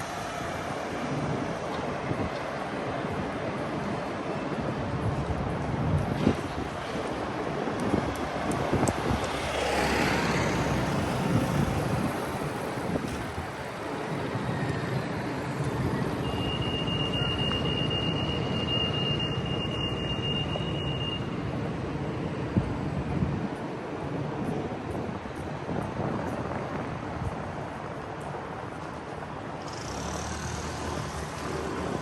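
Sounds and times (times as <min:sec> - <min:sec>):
urban traffic: 0:00.0 - 0:32.0
vehicle passing: 0:08.4 - 0:14.3.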